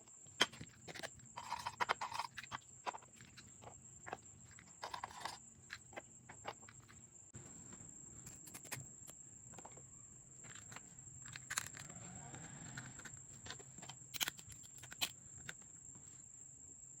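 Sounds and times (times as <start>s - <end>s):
plastic toy pieces clicking: 12.7s - 15.2s.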